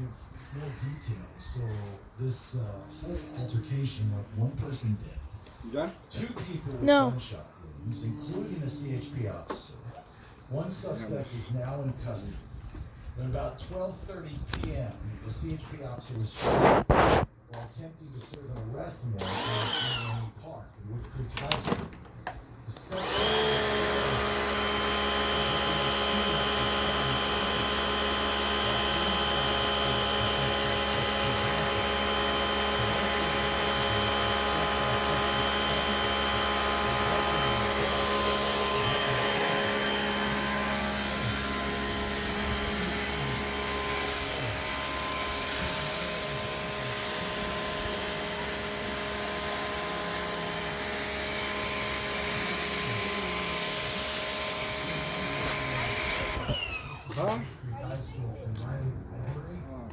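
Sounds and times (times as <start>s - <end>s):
small motor whining: 16.4s - 17.3s, 19.2s - 20.3s, 22.9s - 57.4s.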